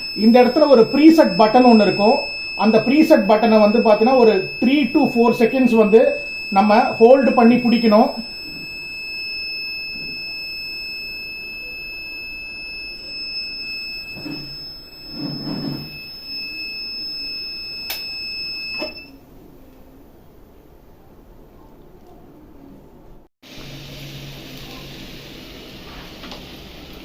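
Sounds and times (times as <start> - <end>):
high-pitched long beep: 0.0 - 19.2.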